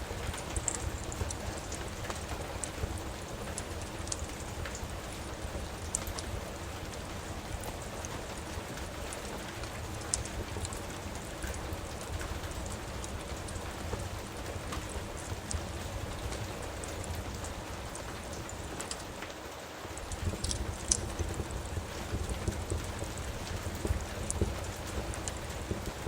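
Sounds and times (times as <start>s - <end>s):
steady rain: 0.0s - 26.0s
wood fire crackling: 0.0s - 26.0s.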